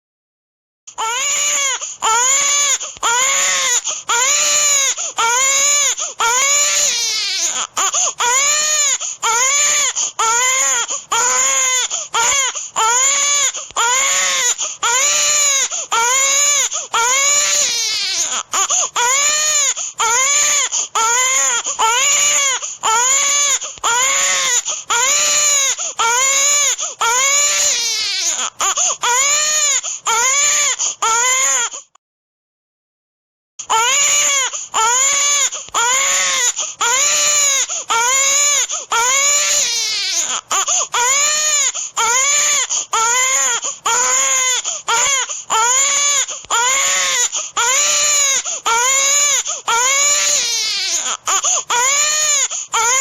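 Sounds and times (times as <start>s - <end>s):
baby crying wail: 0.9s - 31.9s, 33.6s - 53.0s.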